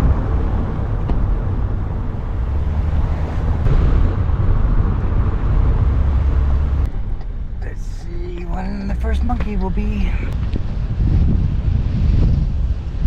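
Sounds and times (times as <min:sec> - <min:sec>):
vehicle engine rumble: 0:00.0 - 0:13.0
wind on microphone: 0:10.1 - 0:13.0.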